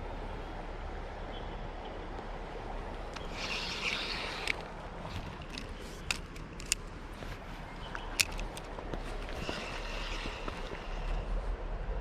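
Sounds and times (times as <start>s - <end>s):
creek water rushing: 0.0s - 11.9s
fishing reel clicks: 3.1s - 4.7s
fishing line hiss: 3.1s - 5.4s, 9.4s - 11.3s.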